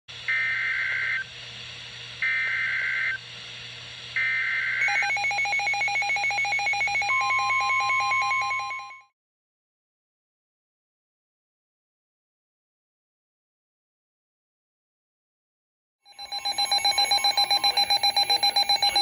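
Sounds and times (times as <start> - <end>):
screechy data tones: 0.3 - 1.3, 2.2 - 3.2, 4.2 - 8.8, 16.1 - 19.0.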